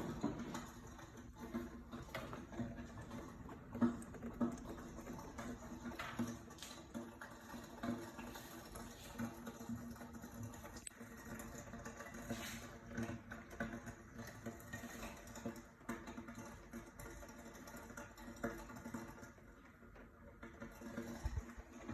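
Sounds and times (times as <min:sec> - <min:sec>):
faint popping and crackling: 0:00.0 - 0:21.9.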